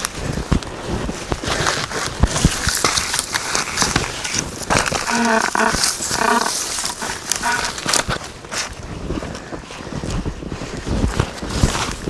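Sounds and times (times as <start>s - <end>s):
pine boughs crunching and snapping: 0.0s - 9.6s
footsteps in deep snow: 0.0s - 12.0s.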